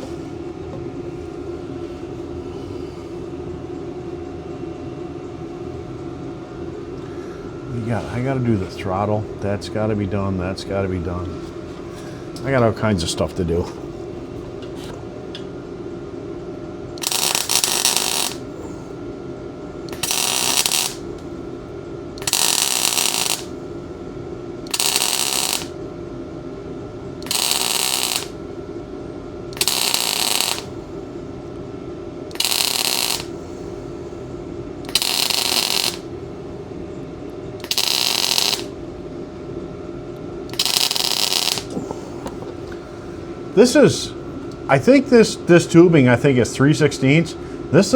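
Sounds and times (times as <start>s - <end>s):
steady hum: 0.0s - 47.9s
welding arc crackling: 17.0s - 18.6s, 19.9s - 21.3s, 22.2s - 23.6s, 24.7s - 25.8s, 27.2s - 28.4s, 29.6s - 30.8s, 32.3s - 33.4s, 34.9s - 36.1s, 37.6s - 38.8s, 40.5s - 41.8s.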